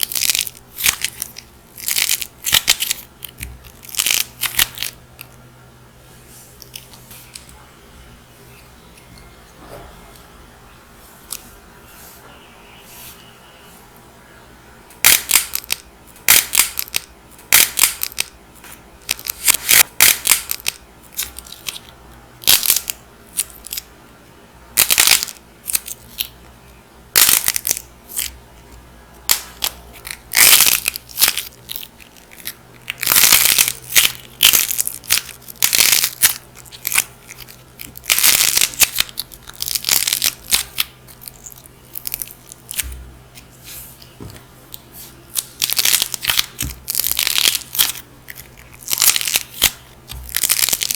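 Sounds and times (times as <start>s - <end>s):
dried clay crackling crunches: 0.0s - 5.4s, 24.7s - 50.9s.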